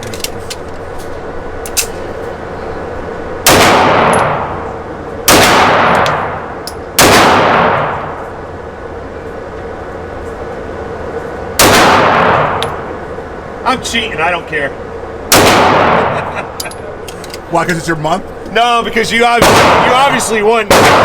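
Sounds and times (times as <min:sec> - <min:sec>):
echoing pistol shots: 0:03.4 - 0:04.6, 0:05.2 - 0:08.1, 0:11.6 - 0:12.6, 0:15.3 - 0:16.3, 0:19.4 - 0:21.0.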